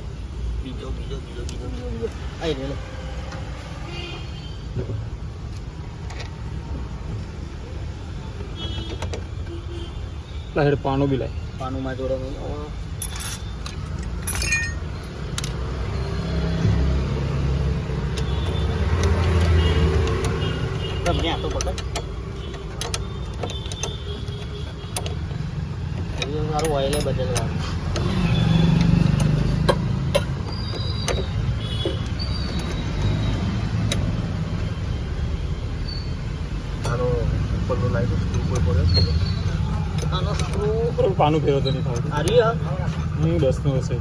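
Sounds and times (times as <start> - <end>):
vehicle engine rumbling: 4.6 - 44.0
metal tools clicking and knocking: 12.8 - 15.8, 18.0 - 34.8, 36.5 - 37.5, 38.1 - 42.4
metal tools clinking: 12.9 - 15.6, 21.0 - 28.1.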